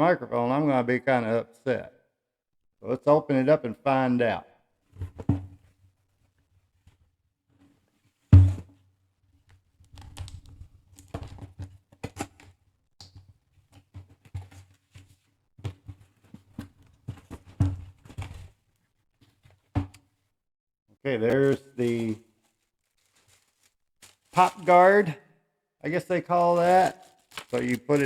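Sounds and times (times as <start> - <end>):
sharp thump on cardboard box: 8.4 - 8.7
packaging rustling: 21.3 - 25.0, 26.2 - 28.0.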